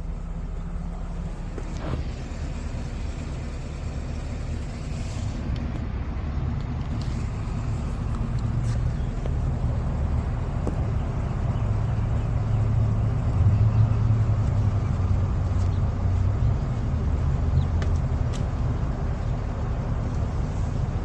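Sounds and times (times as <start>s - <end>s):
faint rear-end ticking: 0.0s - 21.0s
truck drivetrain and road rumble: 0.0s - 21.0s.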